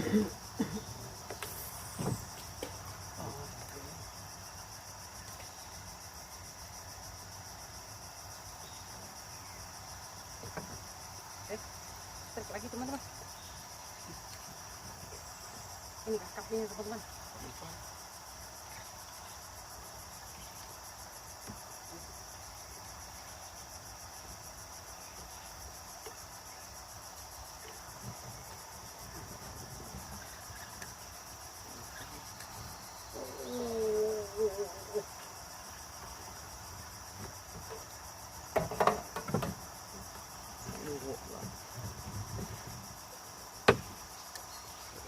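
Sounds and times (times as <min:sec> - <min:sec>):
insects chirring: 0:00.0 - 0:45.0
knocks: 0:38.5 - 0:39.6, 0:43.6 - 0:44.0.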